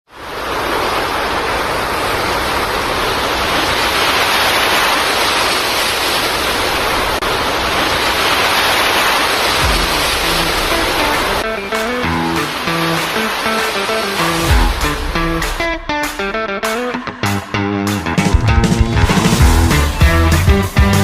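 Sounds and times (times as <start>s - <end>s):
waterfall pouring: 0.2s - 15.7s.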